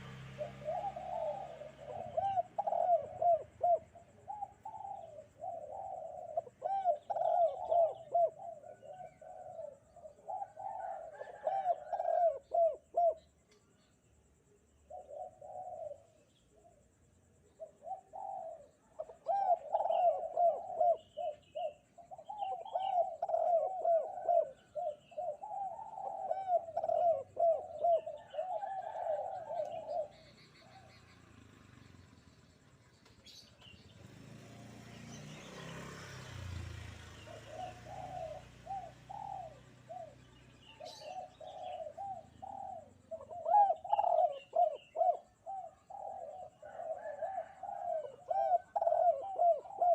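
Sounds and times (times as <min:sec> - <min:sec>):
dove cooing: 0:00.0 - 0:13.7, 0:14.6 - 0:49.9
small birds chirping: 0:00.0 - 0:49.9.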